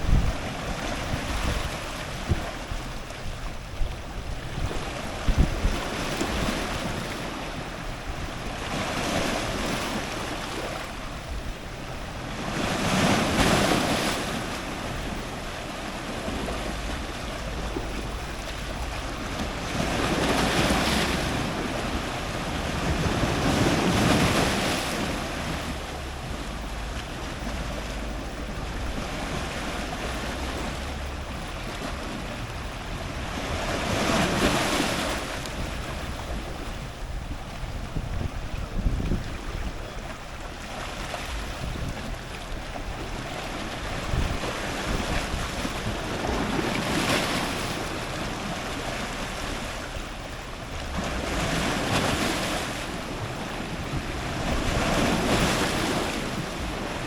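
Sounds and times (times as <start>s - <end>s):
wind buffeting microphone: 0.0s - 48.9s, 49.6s - 57.0s
ocean surf crashing on rocks: 0.0s - 57.0s.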